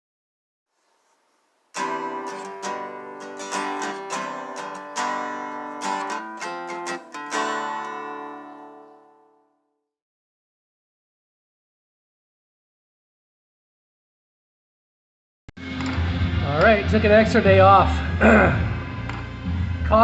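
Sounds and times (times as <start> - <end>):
strummed guitar chords: 1.8 - 9.4.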